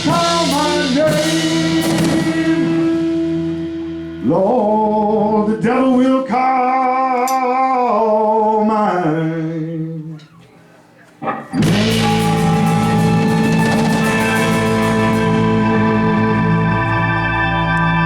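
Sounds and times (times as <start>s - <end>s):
band playing loud held chord: 0.0s - 5.0s, 11.6s - 18.0s
organ: 0.0s - 6.7s, 11.1s - 18.0s
person singing long notes: 0.0s - 10.1s, 11.6s - 18.0s.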